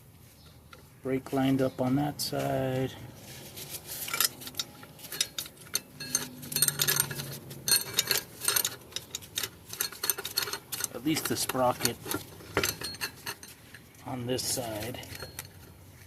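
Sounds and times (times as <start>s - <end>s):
metal parts clinking: 3.6s - 15.8s.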